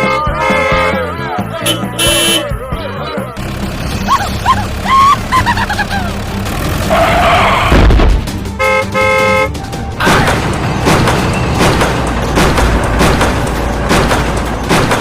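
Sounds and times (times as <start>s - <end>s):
vehicle horn toots: 0.0s - 2.6s, 8.6s - 9.6s.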